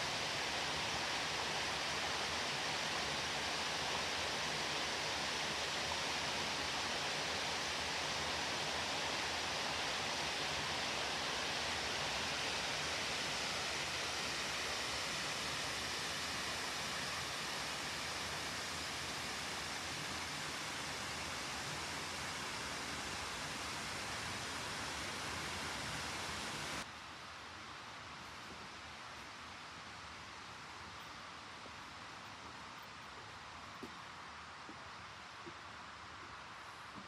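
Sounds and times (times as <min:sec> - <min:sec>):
waterfall and stream rushing: 0:00.0 - 0:26.9.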